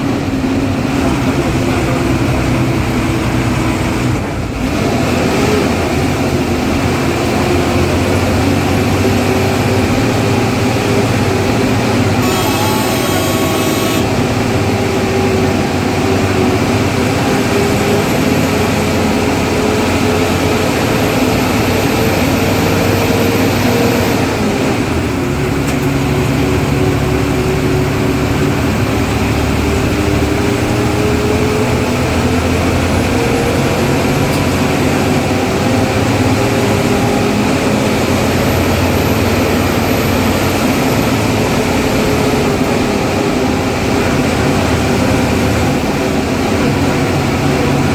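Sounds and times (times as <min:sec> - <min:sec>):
bus diesel engine under load: 0:00.0 - 0:47.9
turbocharger whistle: 0:12.2 - 0:14.2.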